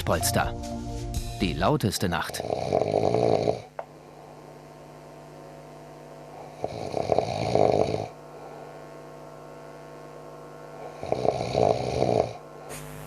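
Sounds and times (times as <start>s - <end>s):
steady hum: 0.0s - 13.0s
man snoring loudly: 2.2s - 3.8s, 6.3s - 8.6s, 10.7s - 12.9s.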